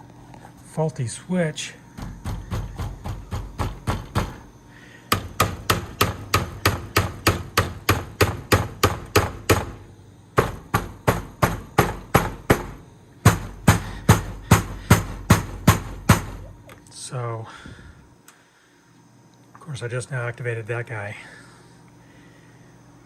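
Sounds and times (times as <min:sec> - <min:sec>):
hand knocking on pinball cabinet: 0:02.0 - 0:04.4, 0:10.4 - 0:16.5.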